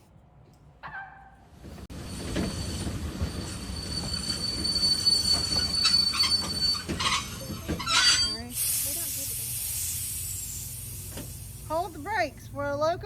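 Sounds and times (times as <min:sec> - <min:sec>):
train rumbling: 0:01.5 - 0:13.0
high wheel squeal: 0:02.0 - 0:08.5.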